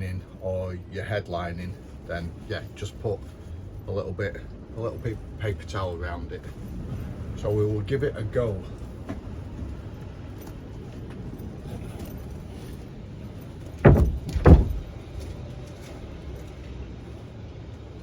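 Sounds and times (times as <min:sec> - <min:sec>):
board thudding against frame: 0:13.8 - 0:15.2.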